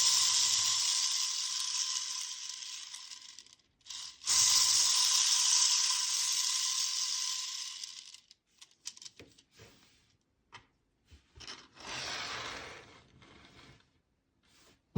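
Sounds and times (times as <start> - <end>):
fidget spinner whirring: 0.0 - 9.2.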